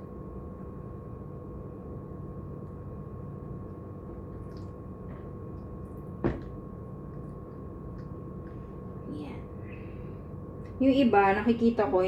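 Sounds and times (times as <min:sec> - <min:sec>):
faint whine: 0:00.0 - 0:12.0
machine hum: 0:00.0 - 0:12.0.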